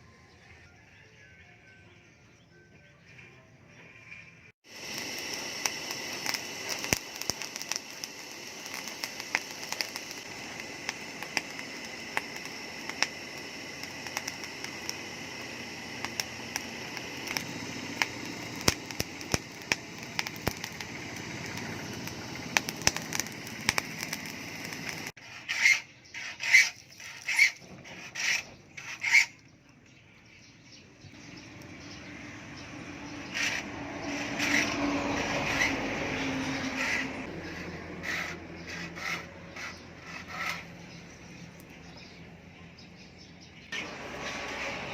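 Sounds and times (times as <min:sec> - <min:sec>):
rubbing strokes on blade: 0:22.9 - 0:29.4, 0:33.2 - 0:41.1
rasping grind on steel blade: 0:25.2 - 0:29.4, 0:33.2 - 0:41.1.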